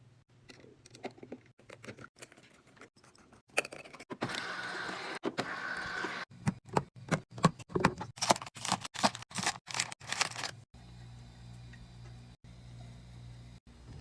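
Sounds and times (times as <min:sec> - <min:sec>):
packaging clicking and rustling: 0:07.7 - 0:10.6.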